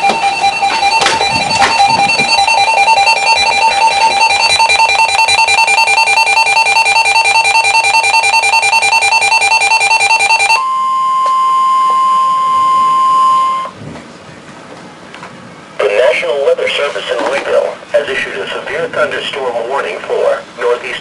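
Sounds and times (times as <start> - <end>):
weather radio alarm beeping: 0.0 - 13.7
steady warning tone: 0.0 - 13.8.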